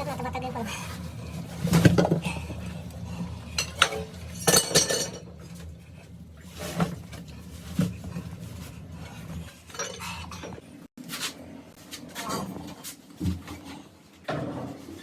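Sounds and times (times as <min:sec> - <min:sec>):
metal tools clinking: 0:03.6 - 0:05.2.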